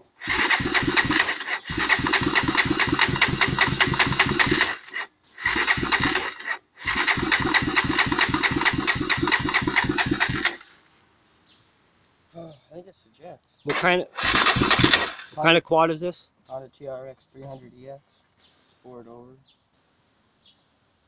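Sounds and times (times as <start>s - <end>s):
engine sputtering: 0.0s - 10.7s, 13.7s - 15.6s.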